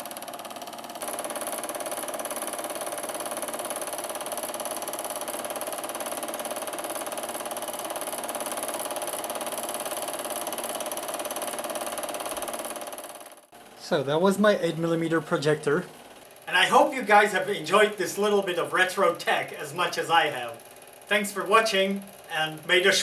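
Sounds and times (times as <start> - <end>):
film projector running: 0.0 - 23.0.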